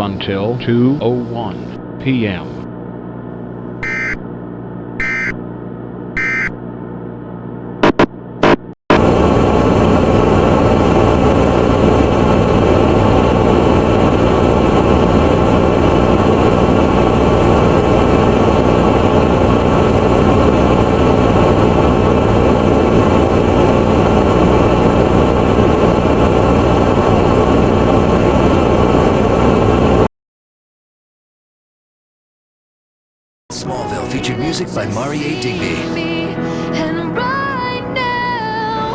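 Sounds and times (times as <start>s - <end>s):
loud steady noise: 3.8s - 4.2s, 5.0s - 5.4s, 6.2s - 6.5s, 7.8s - 10.8s.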